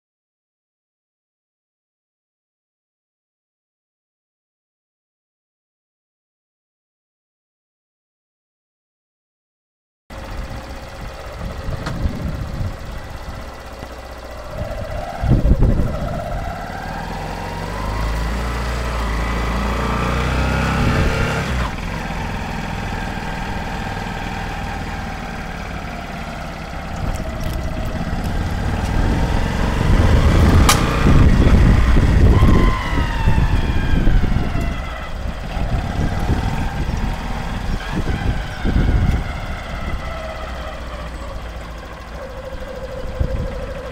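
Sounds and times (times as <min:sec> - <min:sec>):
motorcycle engine revving: 0:10.1 - 0:43.9
sharp click: 0:30.5 - 0:31.1.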